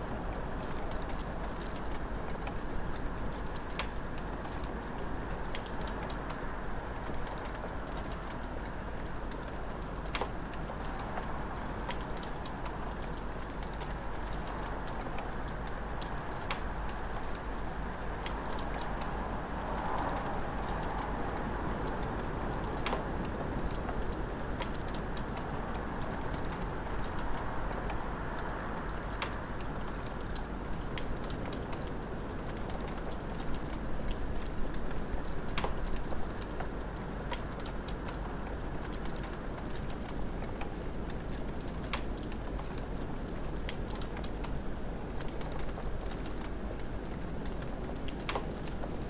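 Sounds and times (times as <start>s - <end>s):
wood fire crackling: 27.9s - 49.0s.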